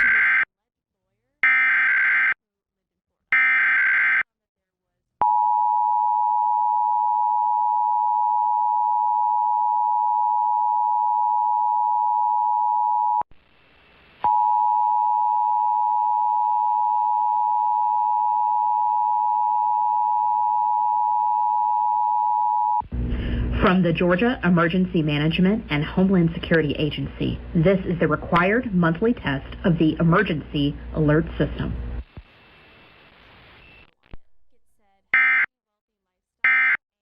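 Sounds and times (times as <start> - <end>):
two-tone alarm signal: 1.4 - 2.4, 3.4 - 4.2, 35.2 - 35.5, 36.4 - 36.8.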